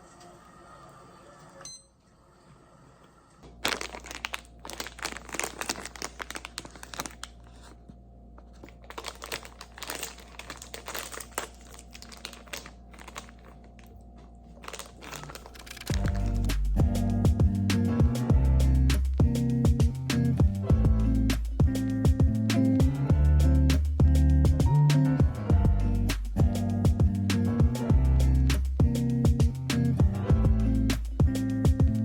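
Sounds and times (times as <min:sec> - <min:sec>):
crinkly material crackling: 0:03.5 - 0:16.5.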